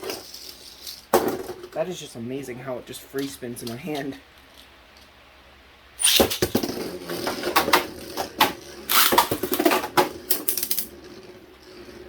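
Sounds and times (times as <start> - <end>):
spinning tops clashing: 0.0 - 1.8, 6.0 - 12.0
spinning tops whirring: 0.0 - 1.9, 6.0 - 12.0.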